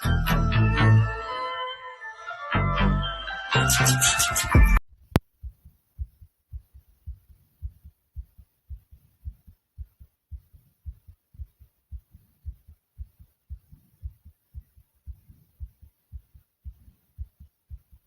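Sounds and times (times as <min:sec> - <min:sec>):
fast heartbeat thumps: 0:04.5 - 0:18.0.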